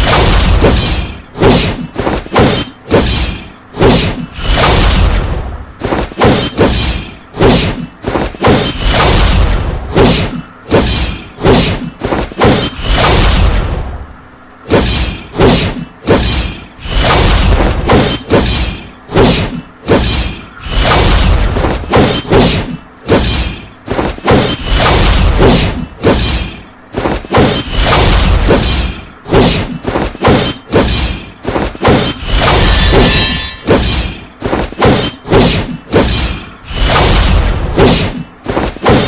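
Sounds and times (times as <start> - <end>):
high-pitched squeal: 32.1 - 33.8.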